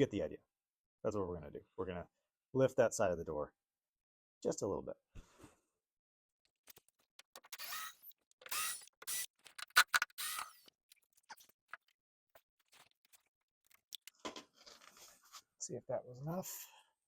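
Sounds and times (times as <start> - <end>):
sharp clicks of tools: 7.2 - 10.7.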